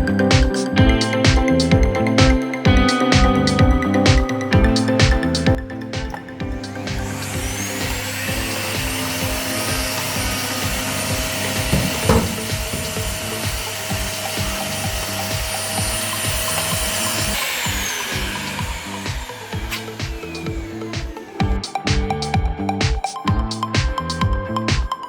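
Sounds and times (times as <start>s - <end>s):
background music with beat: 0.0s - 25.0s
vacuum cleaner motor whining: 5.6s - 21.9s.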